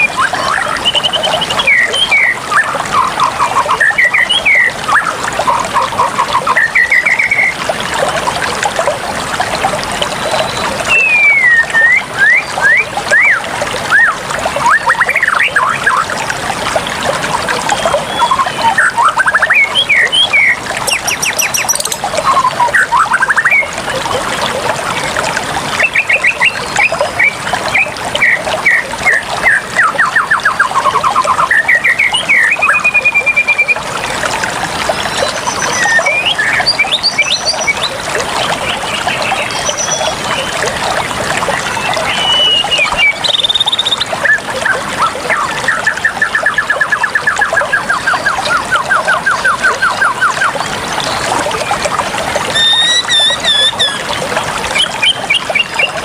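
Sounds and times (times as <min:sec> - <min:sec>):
running water: 0:00.0 - 0:56.0
birds calling: 0:52.5 - 0:54.1.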